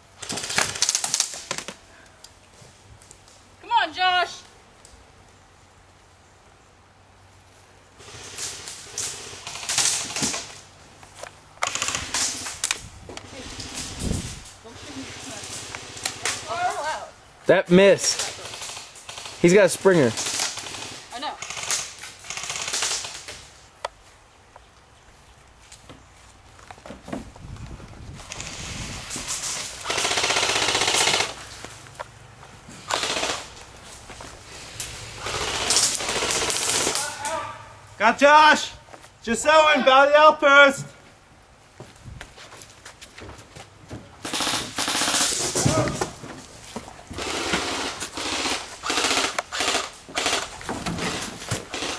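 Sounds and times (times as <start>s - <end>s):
airsoft guns firing bursts: 8.0s - 10.6s, 11.6s - 12.6s, 18.1s - 23.3s, 28.3s - 31.4s, 32.9s - 33.6s, 35.1s - 37.1s, 44.2s - 45.7s, 47.1s - 51.9s.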